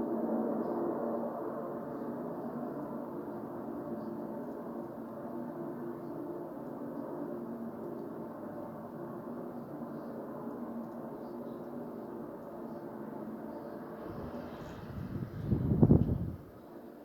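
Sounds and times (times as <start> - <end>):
loud droning hum: 12.6 - 16.6.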